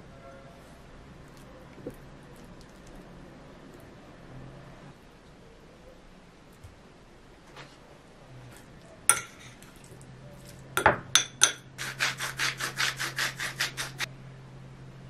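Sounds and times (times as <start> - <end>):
scraping strokes: 11.8 - 14.1.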